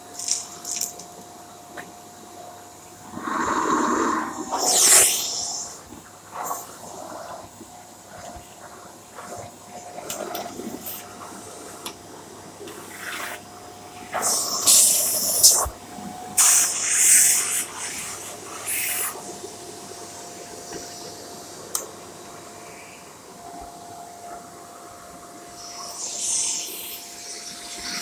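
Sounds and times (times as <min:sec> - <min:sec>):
vacuum cleaner whine: 0:00.0 - 0:28.0
hissing rushes of air: 0:03.0 - 0:07.0, 0:14.1 - 0:15.8, 0:25.6 - 0:28.0.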